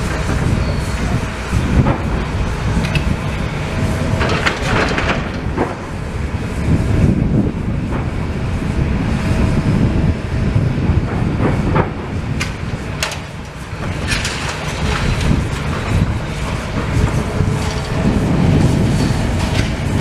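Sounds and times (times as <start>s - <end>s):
excavator engine rumble: 0.0s - 20.0s
debris knocking and clattering: 11.4s - 18.2s.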